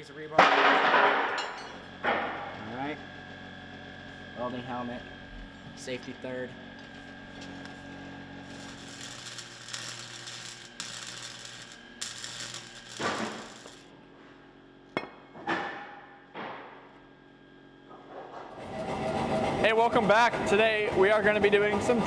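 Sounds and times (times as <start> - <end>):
arc welding crackling: 6.8 - 13.9.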